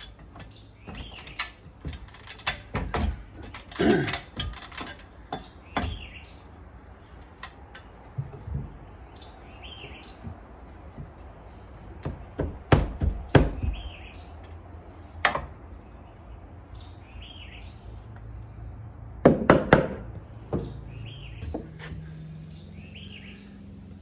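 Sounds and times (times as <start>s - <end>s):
bird chirping: 0.0s - 2.4s, 5.2s - 7.5s, 8.9s - 11.0s, 13.0s - 14.6s, 15.8s - 18.1s, 20.5s - 23.9s
knocks on wood: 12.0s - 13.9s, 19.2s - 20.8s.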